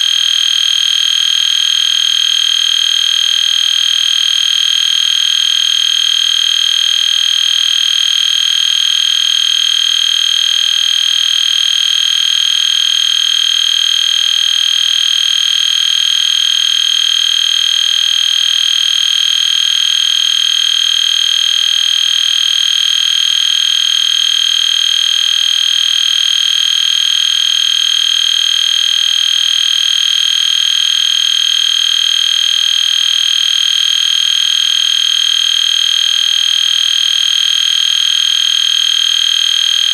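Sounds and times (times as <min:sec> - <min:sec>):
fire alarm horn steady tone: 0:00.0 - 0:39.9.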